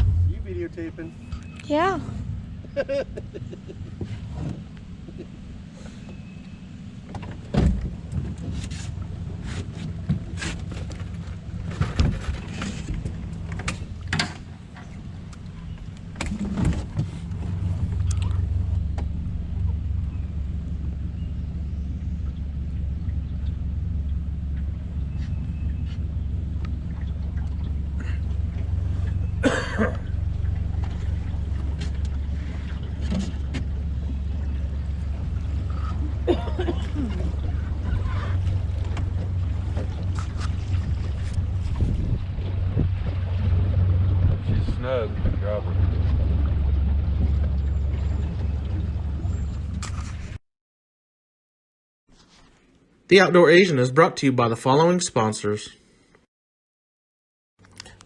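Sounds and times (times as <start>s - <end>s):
boat engine rumble: 0.0s - 50.4s, 57.6s - 58.0s
gear clattering against boat: 3.9s - 20.2s, 22.2s - 50.4s.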